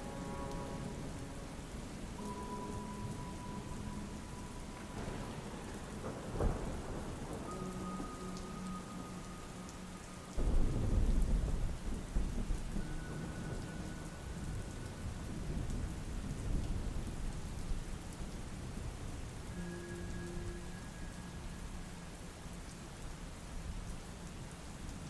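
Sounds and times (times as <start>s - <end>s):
rain falling: 0.0s - 25.0s
thunder roll: 4.8s - 8.7s, 10.4s - 17.3s.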